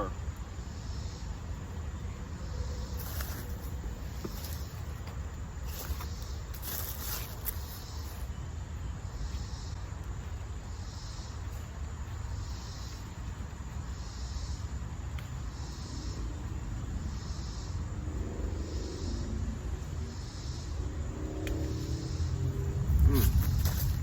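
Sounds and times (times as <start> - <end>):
insects chirping: 0.0 - 24.0
plants rustling: 3.0 - 8.2
wind rumble on microphone: 14.6 - 24.0.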